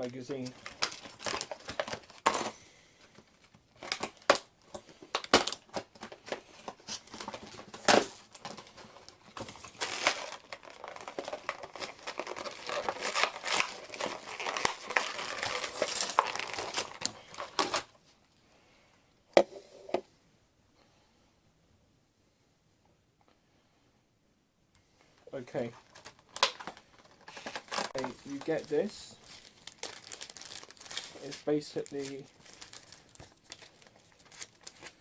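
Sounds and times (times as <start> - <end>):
plastic packaging crinkling: 0.0 - 18.0, 25.6 - 35.0.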